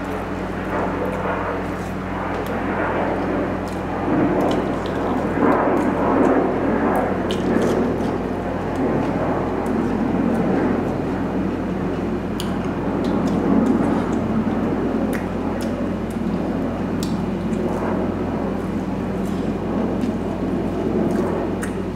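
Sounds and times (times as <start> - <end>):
steady low hum: 0.0 - 21.9
chewing and wet mouth sounds: 7.2 - 8.8, 12.3 - 14.2, 15.1 - 16.2, 17.0 - 17.7, 21.1 - 21.9
small clicks and smacks: 12.4 - 14.2, 15.1 - 16.2, 17.0 - 17.7, 21.1 - 21.8.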